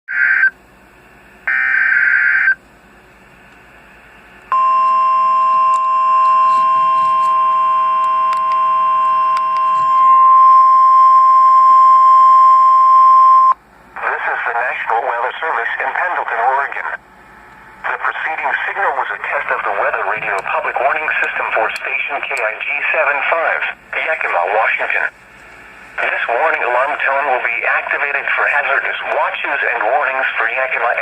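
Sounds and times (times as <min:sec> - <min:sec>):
steady warning alarm tone: 0:01.4 - 0:02.6, 0:04.5 - 0:13.6.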